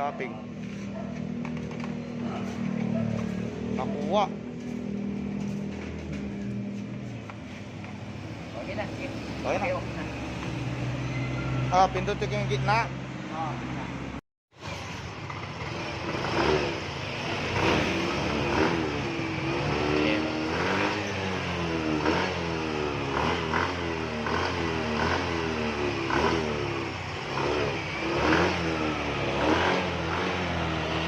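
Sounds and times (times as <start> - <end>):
scooter engine revving: 0.8 - 7.1, 14.6 - 31.0.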